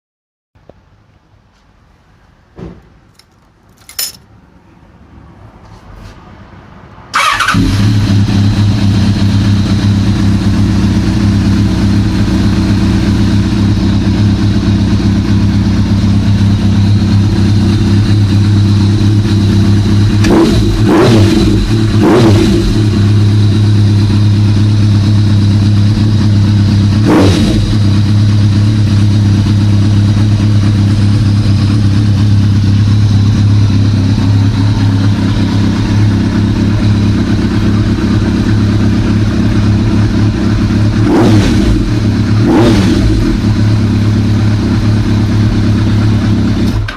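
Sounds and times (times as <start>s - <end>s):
motorcycle starter cranking: 7.1s - 8.2s
motorcycle engine idling loudly: 7.2s - 46.9s.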